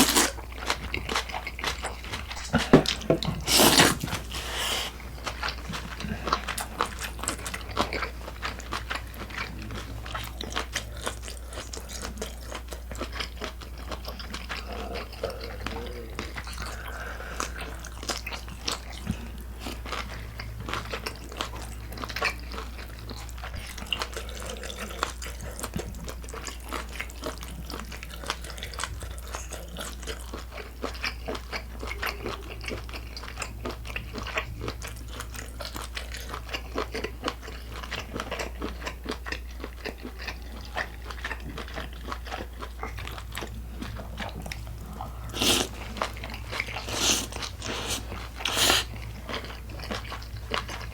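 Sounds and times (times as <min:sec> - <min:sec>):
crunchy bites: 0:00.0 - 0:00.4
chewing and biting: 0:00.0 - 0:50.9.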